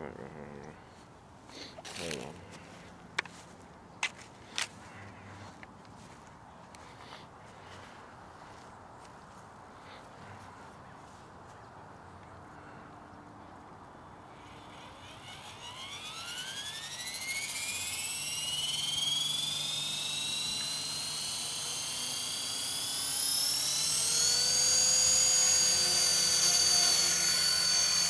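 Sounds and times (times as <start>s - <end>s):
model helicopter motor whine: 1.6s - 7.0s, 13.6s - 28.0s.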